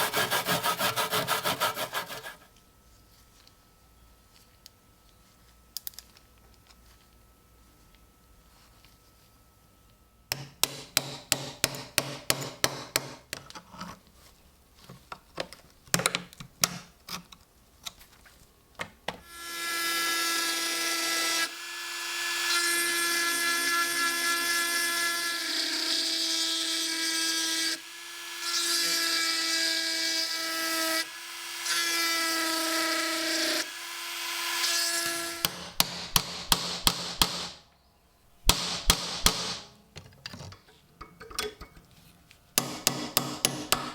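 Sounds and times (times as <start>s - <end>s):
power tool whining: 19.3s - 35.5s.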